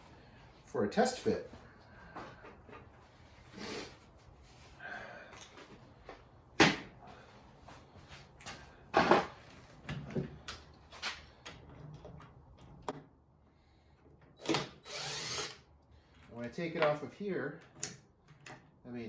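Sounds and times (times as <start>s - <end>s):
workshop knocks and clunks: 6.6s - 7.2s, 8.9s - 10.4s.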